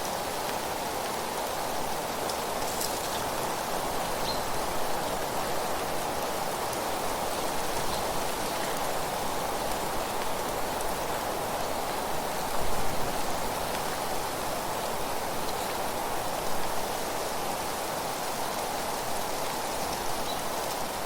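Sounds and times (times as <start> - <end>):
wind through leaves: 0.0 - 21.0.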